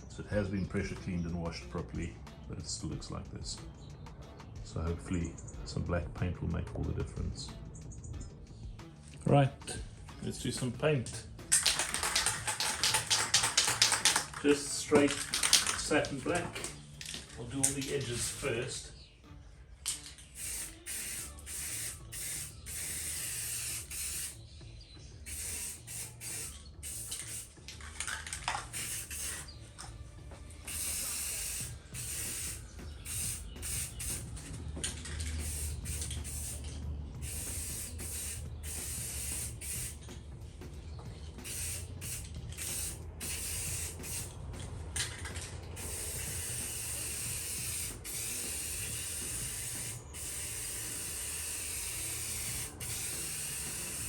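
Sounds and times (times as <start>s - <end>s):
spray paint can hissing: 10.3s - 18.8s, 19.8s - 30.0s, 30.6s - 40.3s, 40.9s - 54.0s.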